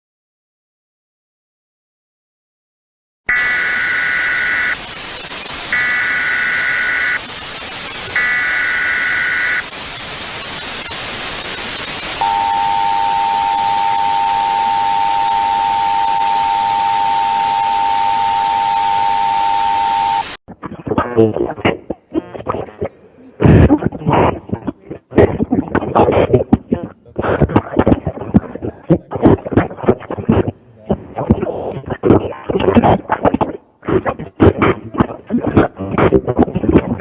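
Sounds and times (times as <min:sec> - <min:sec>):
shrill data bursts: 0:03.3 - 0:20.4
tv static hiss: 0:03.3 - 0:37.0
two-tone alert signal: 0:12.2 - 0:20.3.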